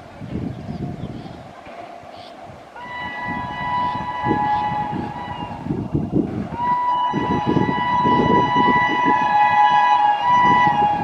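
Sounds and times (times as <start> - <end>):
low rumbling: 0.0 - 11.0
shrill locomotive horn blasts: 2.8 - 11.0.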